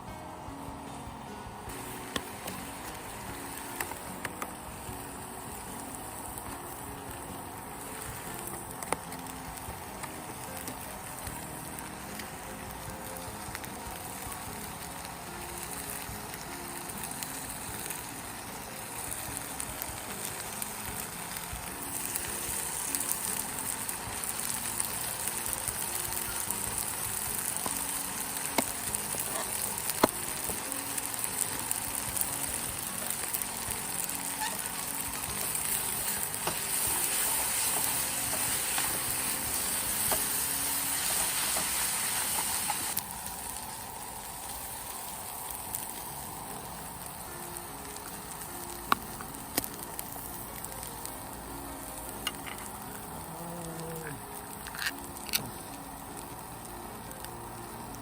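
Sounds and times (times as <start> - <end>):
faint background music: 0.0 - 58.0
food sizzling in a pan: 0.0 - 58.0
sharp pops of frying: 1.7 - 51.2, 52.0 - 53.1.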